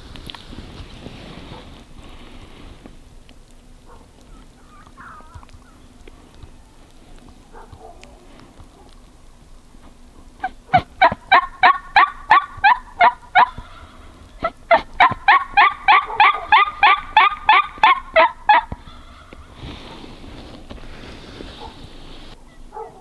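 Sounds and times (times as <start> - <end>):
turkey yelping: 3.8 - 20.5.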